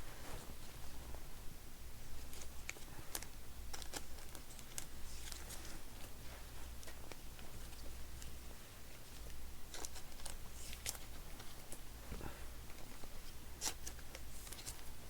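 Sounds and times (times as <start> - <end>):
steady low hum: 0.0 - 15.0
cards and packaging handled: 2.2 - 6.1, 9.1 - 11.8, 12.6 - 15.0.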